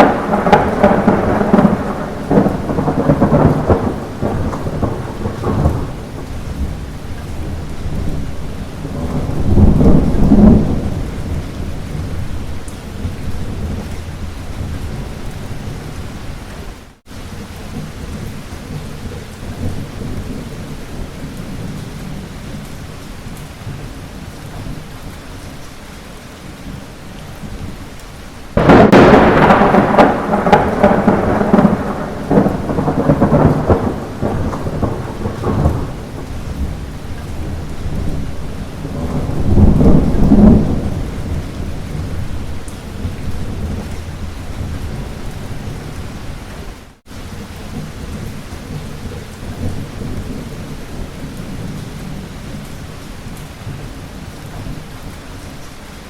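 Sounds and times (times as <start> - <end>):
loud thunderclap: 0.0 - 16.0, 28.6 - 46.4
thunder rumbling: 0.0 - 16.5, 28.5 - 54.9
light rain falling: 0.0 - 56.0.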